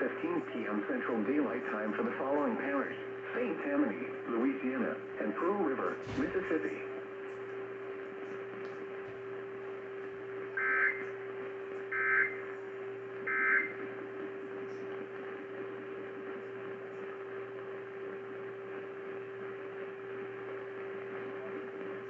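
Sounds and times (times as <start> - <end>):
faint radio static: 0.0 - 22.0
steady hum: 0.0 - 22.0
buzzing digital data tones: 10.6 - 11.2, 11.9 - 12.5, 13.2 - 13.8.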